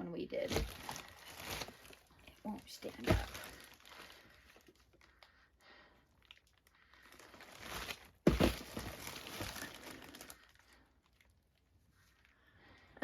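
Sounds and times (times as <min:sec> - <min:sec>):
sack rustling and crinkling: 0:00.4 - 0:04.8, 0:07.1 - 0:10.6
sack dropping with thump: 0:03.0 - 0:03.6, 0:07.7 - 0:09.7.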